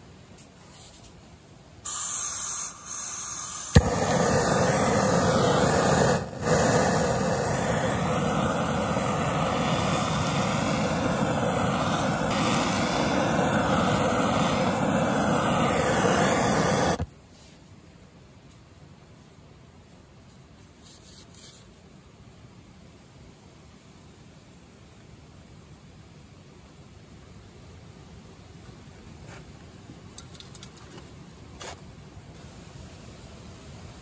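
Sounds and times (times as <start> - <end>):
gas hissing: 1.8 - 17.1
gas burner rushing: 1.9 - 17.1.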